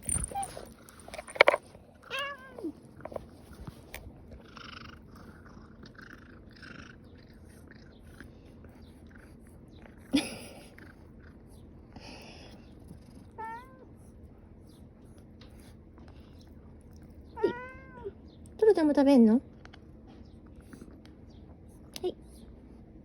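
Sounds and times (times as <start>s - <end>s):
cat meowing: 2.0s - 2.8s, 13.4s - 13.9s, 17.4s - 18.2s.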